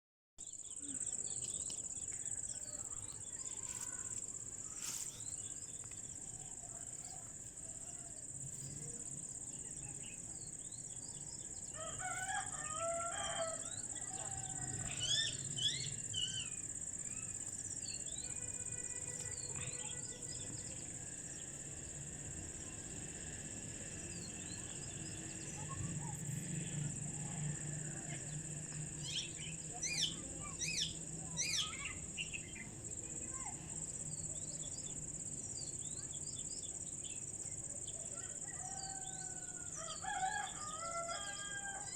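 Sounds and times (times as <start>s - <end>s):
steady high-pitched whine: 0.4s - 41.9s
rooster crowing: 11.7s - 15.4s, 38.2s - 41.9s.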